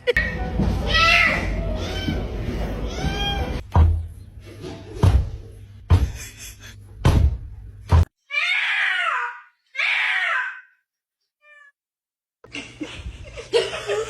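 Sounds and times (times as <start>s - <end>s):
heavy thumps: 3.0s - 4.2s, 7.0s - 8.1s.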